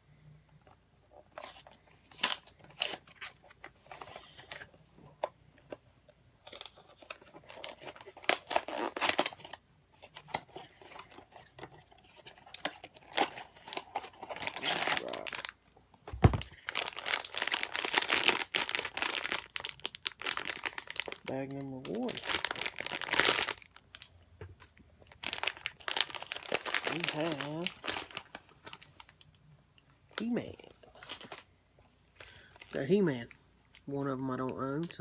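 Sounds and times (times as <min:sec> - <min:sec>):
packaging rustling and crinkling: 0:06.4 - 0:29.3.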